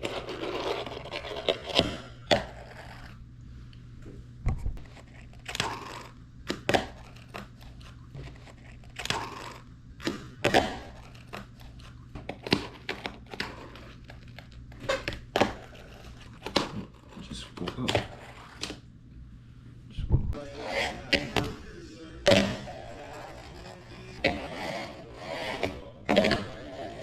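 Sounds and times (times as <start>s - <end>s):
fingerboard scraping: 0.0s - 3.2s, 22.3s - 27.0s.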